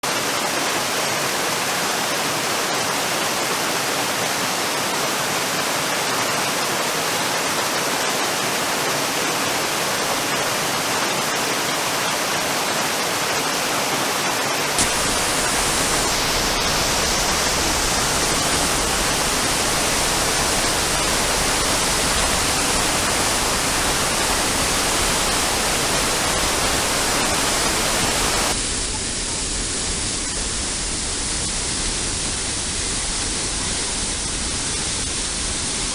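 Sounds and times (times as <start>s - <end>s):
waterfall rushing: 0.2s - 28.6s.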